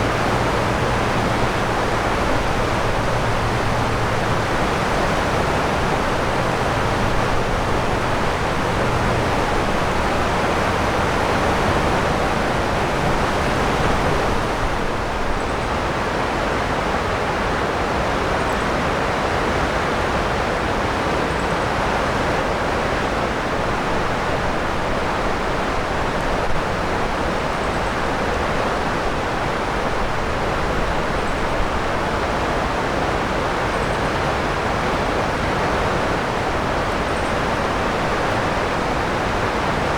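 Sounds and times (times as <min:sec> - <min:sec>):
traffic hum: 0:00.0 - 0:15.4, 0:33.6 - 0:39.9
river water rushing: 0:00.0 - 0:39.9.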